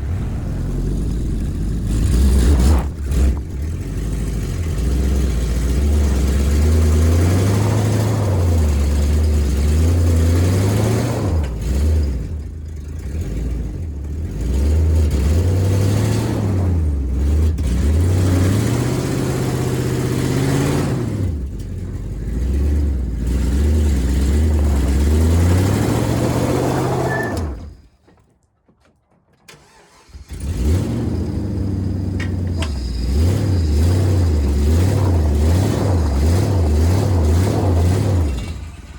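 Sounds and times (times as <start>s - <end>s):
engine revving: 0.0s - 27.8s, 29.6s - 38.9s.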